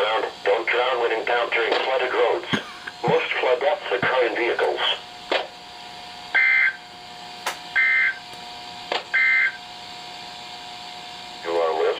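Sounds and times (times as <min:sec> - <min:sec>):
buzzy digital squawks: 0:06.4 - 0:06.8, 0:07.8 - 0:08.2.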